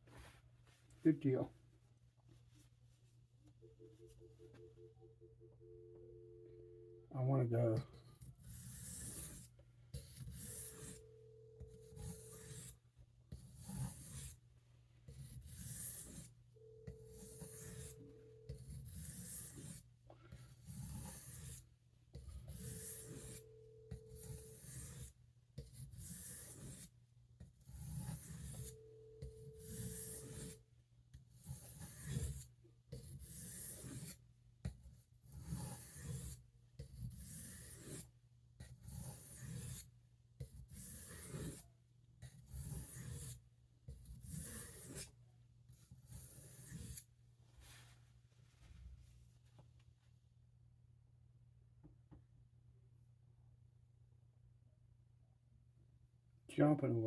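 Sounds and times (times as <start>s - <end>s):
knife scraping on sharpening stone: 8.2s - 11.0s, 11.7s - 12.8s, 17.0s - 19.8s, 22.5s - 25.1s, 25.8s - 26.9s, 27.7s - 30.6s, 31.4s - 32.4s, 33.3s - 34.2s, 35.4s - 36.4s, 38.9s - 39.8s, 40.7s - 41.6s, 42.4s - 43.3s, 44.2s - 45.1s, 46.1s - 47.0s.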